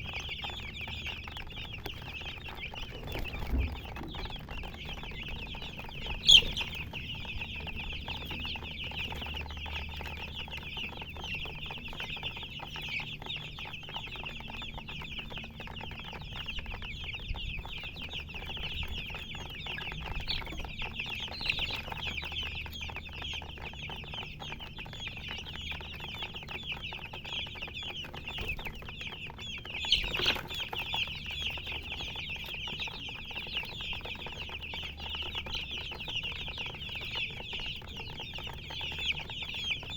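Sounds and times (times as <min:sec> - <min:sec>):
baby chicks peeping: 0:00.0 - 0:39.9.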